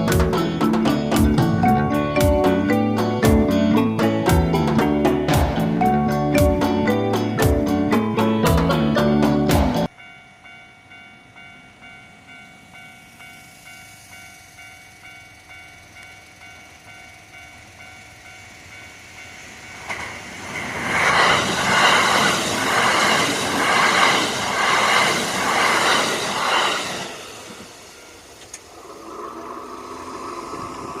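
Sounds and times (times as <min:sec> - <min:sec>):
level crossing bell ringing: 0:00.8 - 0:19.3
train wheels clacking on rail joints: 0:19.3 - 0:27.7.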